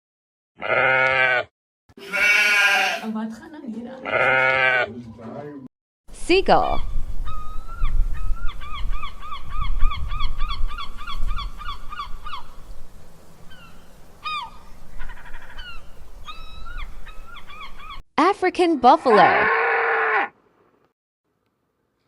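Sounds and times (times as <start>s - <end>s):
seagulls calling: 6.7s - 12.6s, 13.5s - 18.0s.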